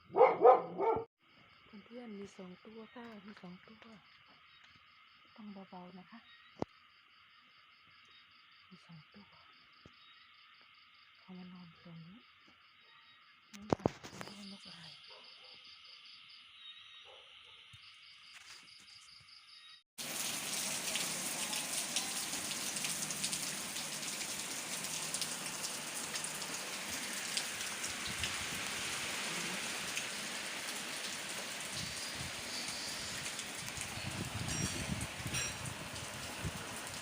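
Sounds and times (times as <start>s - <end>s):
insects chirping: 0.1s - 37.0s
heavy rain falling: 20.0s - 37.0s.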